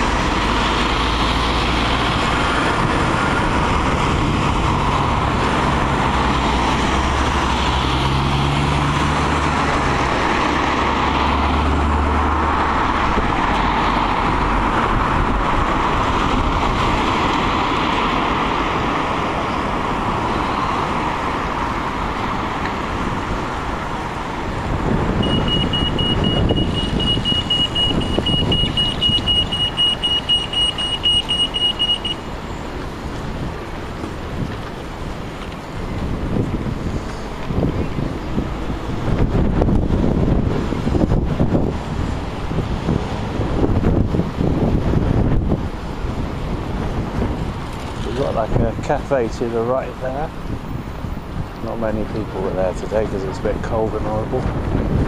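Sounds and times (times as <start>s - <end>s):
vehicles passing: 0.0s - 55.0s
crossing signal pulsing beep: 25.2s - 32.3s.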